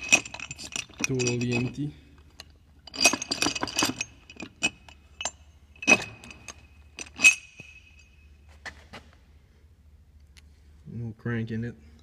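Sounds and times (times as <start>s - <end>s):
metal parts clinking: 0.0s - 8.2s.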